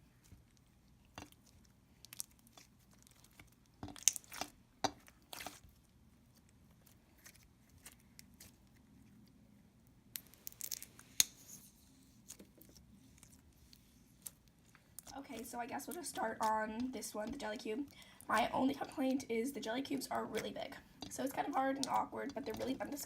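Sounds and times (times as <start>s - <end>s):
slime squished by hand: 0.2s - 8.8s.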